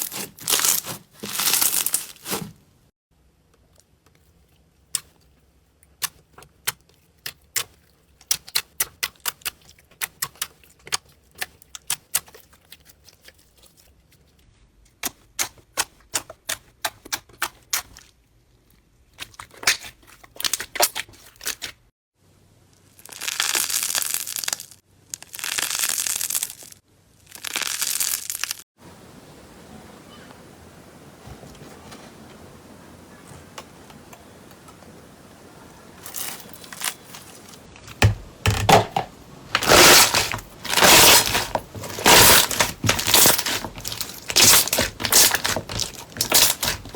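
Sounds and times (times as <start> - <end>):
slime crackling squishes: 0.0 - 2.6, 3.6 - 14.4, 15.0 - 21.9, 22.9 - 28.6, 39.5 - 46.9.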